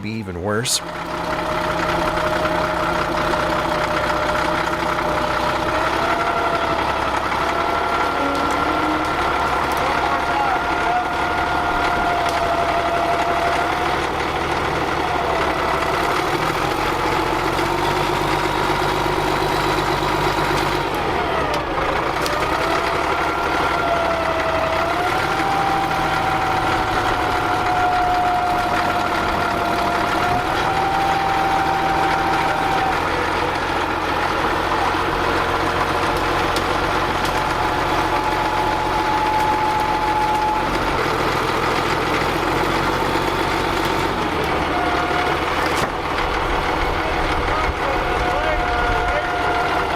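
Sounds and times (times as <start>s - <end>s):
diesel dozer engine running: 0.0s - 49.9s
engine whine: 0.0s - 49.9s.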